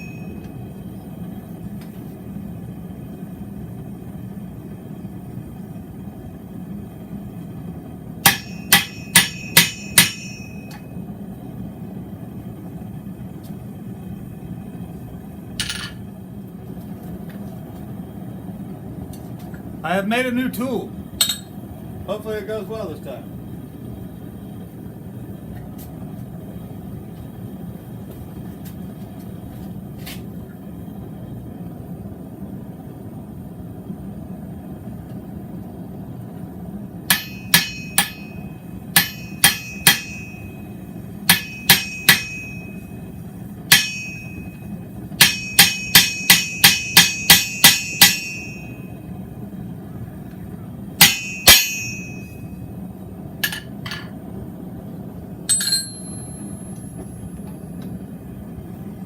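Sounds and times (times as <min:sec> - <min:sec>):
hammer striking steel on anvil: 0:00.0 - 0:00.6, 0:08.2 - 0:10.9, 0:15.6 - 0:16.0, 0:21.2 - 0:21.6, 0:37.1 - 0:43.1, 0:43.7 - 0:49.0, 0:51.0 - 0:52.5, 0:53.4 - 0:54.2, 0:55.5 - 0:57.0
steady low hum: 0:00.0 - 0:59.0.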